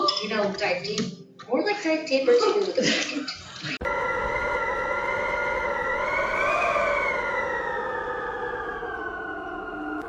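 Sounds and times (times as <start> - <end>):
siren-like wail: 3.8 - 10.0.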